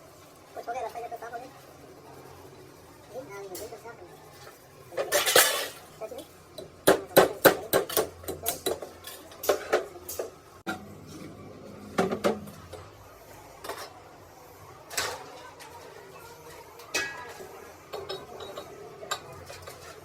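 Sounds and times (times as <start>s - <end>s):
metal tools clinking: 5.0s - 6.0s.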